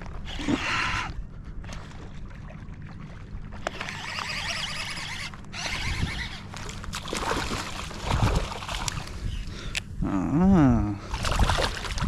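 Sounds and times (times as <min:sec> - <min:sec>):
steady low rumble: 0:00.0 - 0:03.6
shallow water sloshing: 0:00.0 - 0:09.4, 0:11.1 - 0:12.0.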